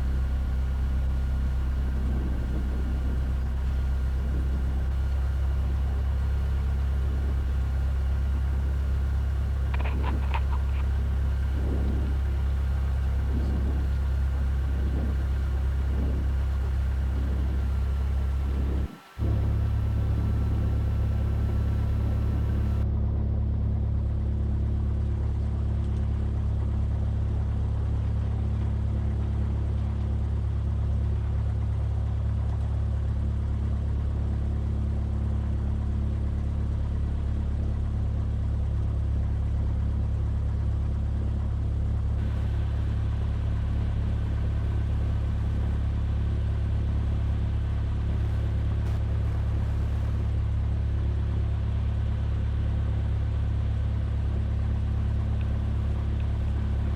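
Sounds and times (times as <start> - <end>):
aircraft engine droning: 0.0 - 22.8, 42.2 - 56.9.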